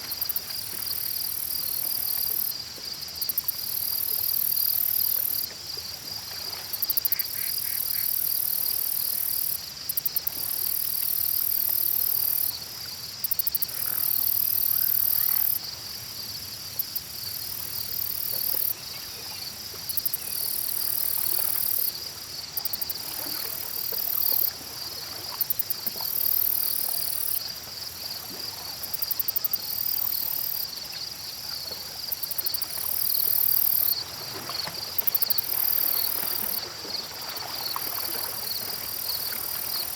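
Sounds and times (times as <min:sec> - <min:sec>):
steady high insect trill: 0:06.8 - 0:28.2, 0:32.0 - 0:34.0, 0:35.0 - 0:39.9.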